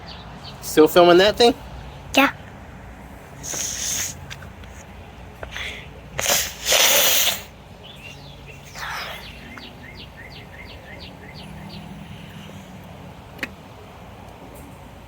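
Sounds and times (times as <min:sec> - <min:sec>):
loud hissing bursts: 0:03.4 - 0:04.3, 0:05.5 - 0:07.6.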